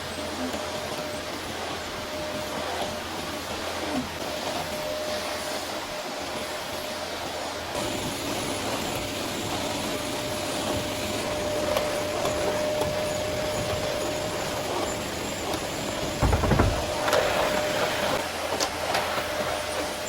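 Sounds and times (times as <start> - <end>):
vacuum cleaner running: 0.0 - 20.0
low bump: 16.2 - 17.7.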